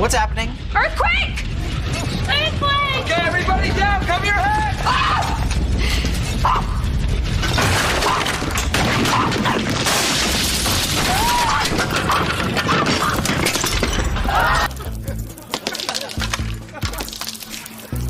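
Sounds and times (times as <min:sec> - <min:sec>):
low rumble: 0:00.0 - 0:08.8
things rattling and crashing: 0:01.0 - 0:18.0
people crying out: 0:10.9 - 0:13.3.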